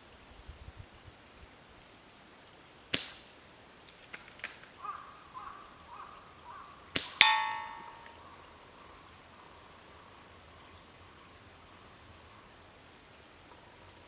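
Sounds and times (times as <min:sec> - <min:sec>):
ringing metallic clang: 0:07.2 - 0:08.8.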